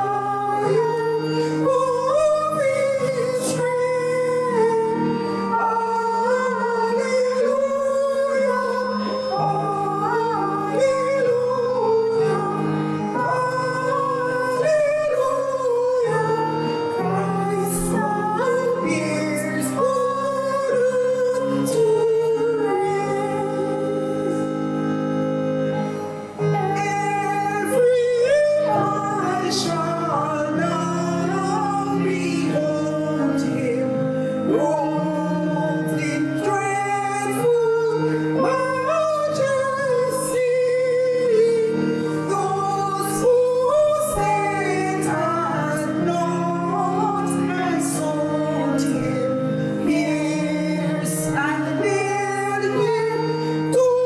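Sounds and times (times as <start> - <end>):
woman singing slow song: 0.0 - 24.5
instrumental accompaniment: 0.0 - 54.0.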